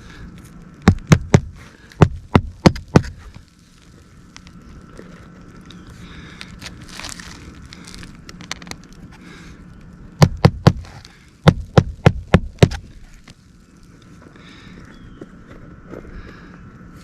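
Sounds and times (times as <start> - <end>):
hammer striking roofing nails: 0.8 - 3.2, 10.2 - 12.8
faint rustling and handling: 3.1 - 9.2.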